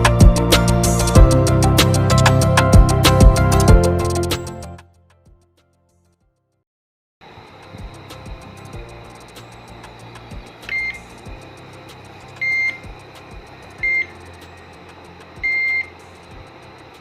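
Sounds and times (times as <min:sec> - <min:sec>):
steady electronic hum: 0:07.2 - 0:17.0
metal detector beeping: 0:10.7 - 0:11.1, 0:12.4 - 0:12.9, 0:13.8 - 0:14.3, 0:15.4 - 0:16.0.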